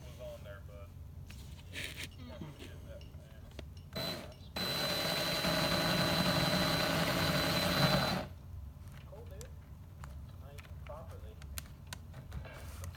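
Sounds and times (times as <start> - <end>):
electric drill whining: 4.0 - 8.3.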